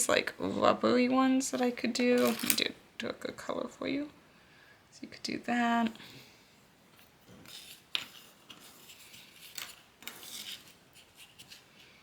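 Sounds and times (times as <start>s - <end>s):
craft pieces rustling: 2.1s - 2.7s
beads clicking: 2.2s - 2.7s.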